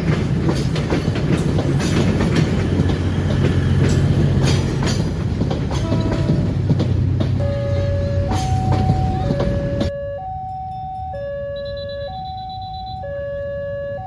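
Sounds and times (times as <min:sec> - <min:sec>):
passing train rumble and clatter: 0:00.0 - 0:09.9
level crossing two-tone alarm: 0:07.6 - 0:14.0.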